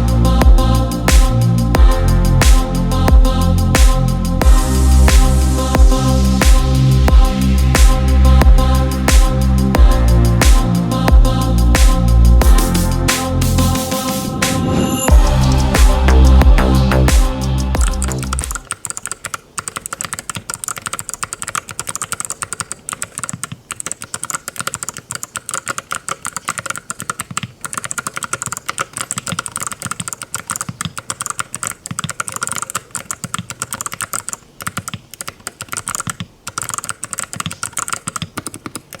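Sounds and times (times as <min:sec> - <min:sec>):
typing on mechanical keyboard: 0:17.8 - 0:39.0.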